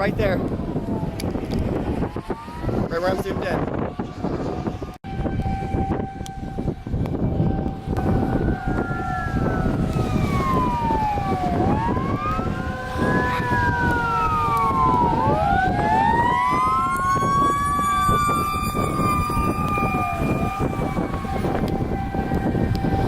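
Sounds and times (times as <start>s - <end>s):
warning sirens wailing: 0.0s - 23.0s.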